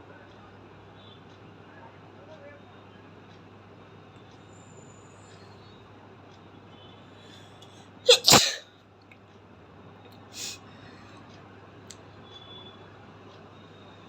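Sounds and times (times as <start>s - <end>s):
person sneezing: 8.1s - 8.6s, 10.4s - 10.6s
hiss of breath: 10.4s - 10.6s.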